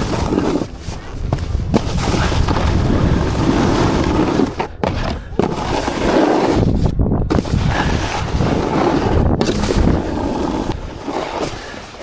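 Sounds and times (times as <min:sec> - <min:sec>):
wind buffeting microphone: 0:00.0 - 0:11.8.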